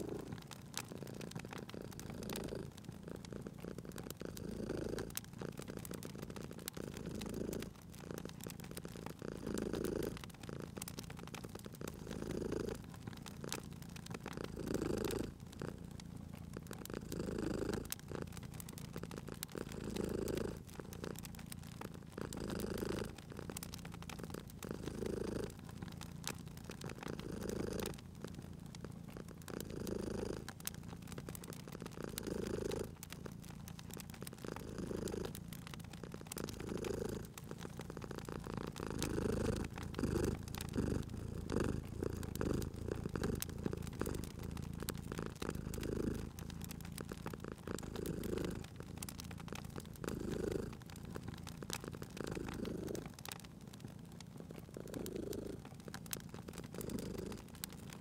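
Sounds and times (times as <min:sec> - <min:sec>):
cat purring: 0:00.0 - 0:58.0
wood fire crackling: 0:00.0 - 0:58.0.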